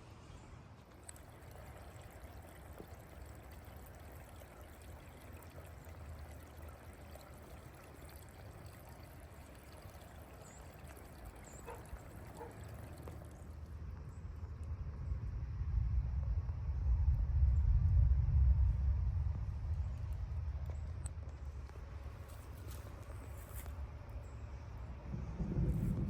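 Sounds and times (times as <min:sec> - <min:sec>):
trickle of running water: 0:00.8 - 0:14.8, 0:19.4 - 0:26.0.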